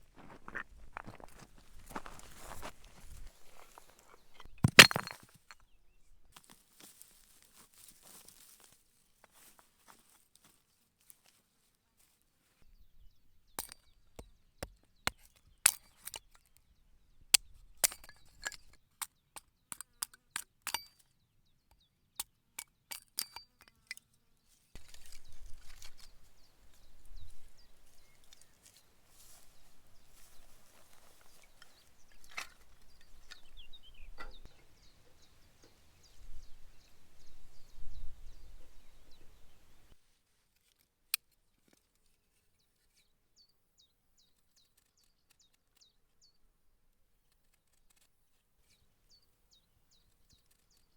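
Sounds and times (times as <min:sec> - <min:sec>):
sharp cracks and knocks: 0:04.6 - 0:05.3, 0:13.6 - 0:16.5.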